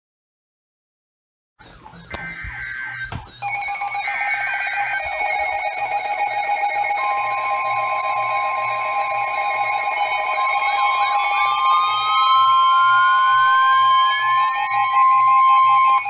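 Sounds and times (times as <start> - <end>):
clicks: 1.6 - 3.4
steady electronic alert tones: 1.8 - 16.0
warbling high tone: 1.8 - 16.0.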